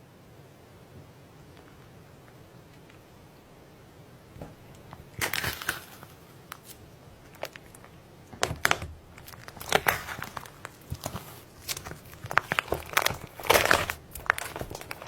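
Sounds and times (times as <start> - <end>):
slime crackly pops: 4.4 - 15.0.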